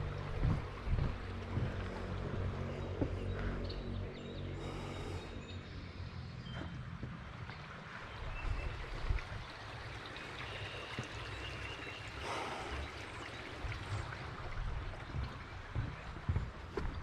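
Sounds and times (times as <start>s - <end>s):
stream water rushing: 7.3s - 16.8s.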